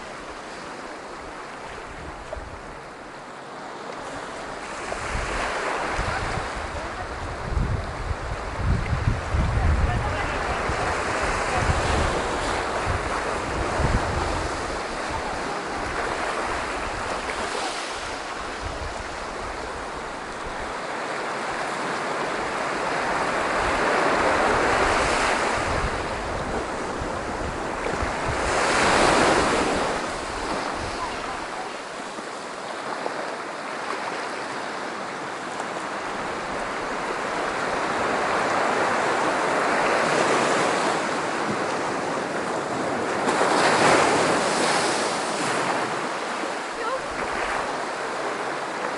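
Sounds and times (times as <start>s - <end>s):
wind rumbling on microphone: 0.0s - 3.1s, 4.0s - 32.3s
surf breaking on beach: 0.0s - 48.9s.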